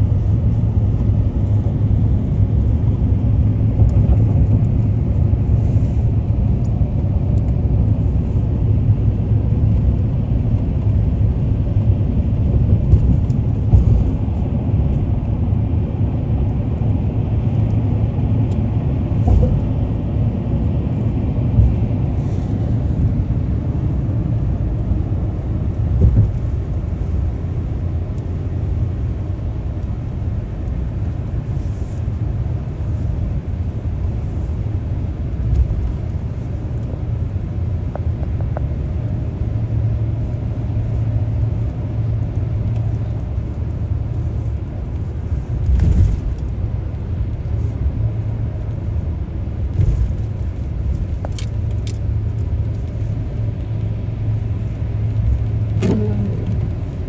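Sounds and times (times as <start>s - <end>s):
car road and engine rumble: 0.0s - 57.0s
car bumps: 19.2s - 19.8s.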